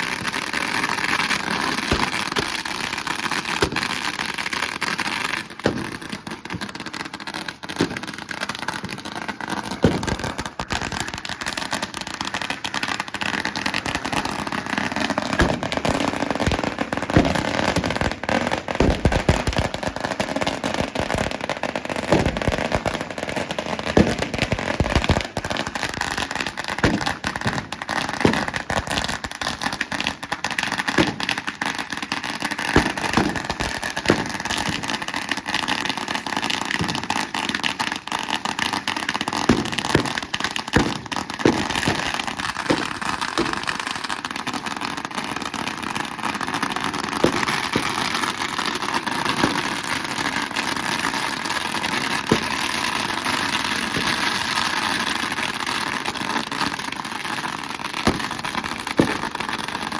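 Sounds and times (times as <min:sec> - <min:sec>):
firecracker bangs: 0:00.0 - 0:04.2, 0:05.5 - 0:06.7, 0:07.7 - 0:08.2, 0:09.7 - 0:11.7, 0:13.8 - 0:30.2, 0:30.9 - 0:31.6, 0:32.6 - 0:35.1, 0:36.8 - 0:37.1, 0:39.4 - 0:44.1, 0:47.2 - 0:48.3, 0:49.3 - 0:49.8, 0:52.1 - 0:54.5, 0:58.0 - 0:59.6
firecrackers crackling and popping: 0:00.0 - 0:59.9.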